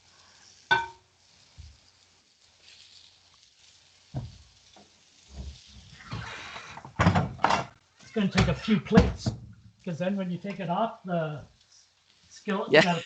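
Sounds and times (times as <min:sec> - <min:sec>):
chicken sizzling in a skillet: 0:00.0 - 0:06.8, 0:07.7 - 0:13.0
cookware knocking: 0:00.7 - 0:01.0.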